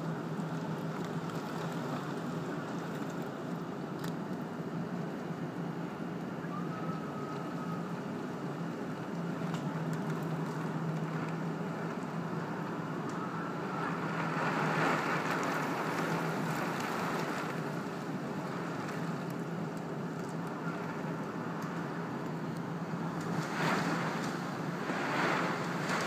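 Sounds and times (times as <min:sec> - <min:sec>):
low steady hum: 0:00.0 - 0:26.0
wind: 0:00.0 - 0:26.0
steady rain: 0:07.2 - 0:26.0.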